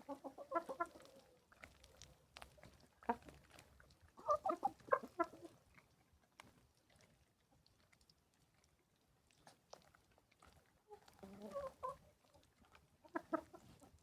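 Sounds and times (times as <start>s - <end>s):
hens clucking: 0.0s - 1.4s, 4.2s - 5.6s, 10.9s - 12.1s, 13.0s - 14.0s
hens pecking at grain: 0.0s - 14.0s.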